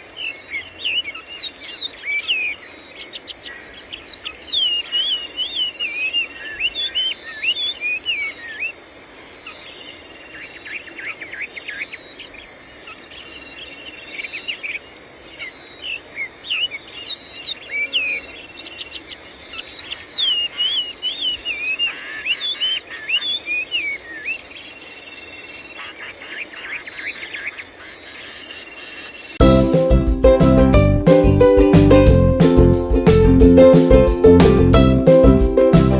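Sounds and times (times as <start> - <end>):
bulbuls chirping: 0.0 - 8.8, 9.4 - 29.4.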